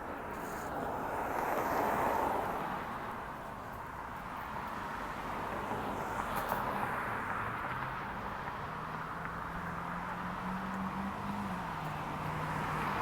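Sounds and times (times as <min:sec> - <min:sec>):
road traffic passing: 0:00.0 - 0:13.0.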